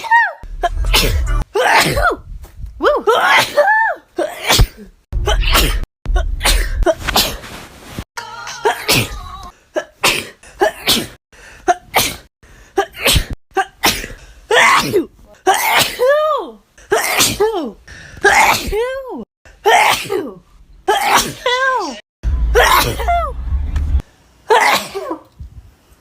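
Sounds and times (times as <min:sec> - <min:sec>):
person sneezing: 0:00.6 - 0:02.2, 0:03.1 - 0:07.4, 0:08.6 - 0:16.1, 0:24.5 - 0:25.2.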